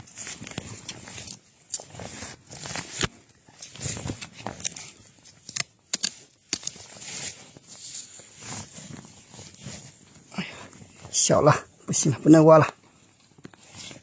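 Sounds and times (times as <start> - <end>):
rustling of dry forest litter: 0.0 - 14.0
sharp clicks and snaps: 5.4 - 6.8.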